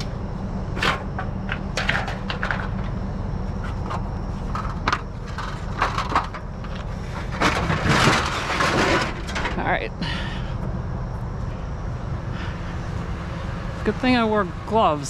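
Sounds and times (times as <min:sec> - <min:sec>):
low rumble: 0:00.0 - 0:15.0
scrap metal clanking: 0:03.6 - 0:09.7.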